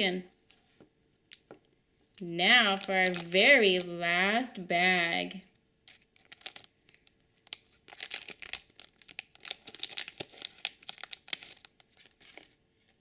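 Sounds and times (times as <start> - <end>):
plastic bag being torn and crinkled: 2.2 - 3.9, 5.9 - 12.6.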